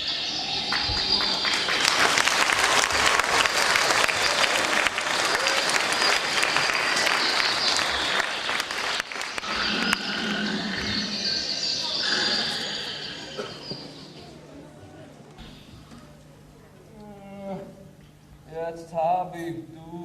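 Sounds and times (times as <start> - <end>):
audience applauding: 0.0 - 13.8.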